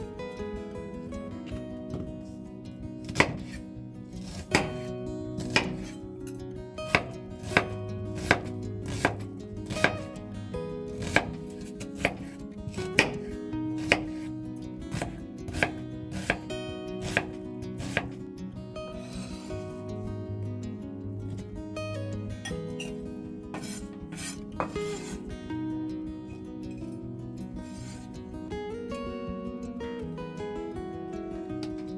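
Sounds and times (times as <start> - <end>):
acoustic guitar music: 0.0 - 31.9
knife chopping on cutting board: 3.1 - 3.6, 4.3 - 6.0, 6.9 - 10.1, 11.0 - 14.3, 14.9 - 18.2, 23.6 - 25.2.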